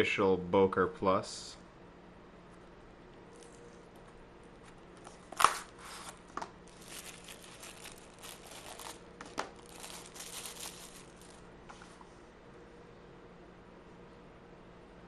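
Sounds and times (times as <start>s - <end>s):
hands rustling: 6.0s - 12.0s.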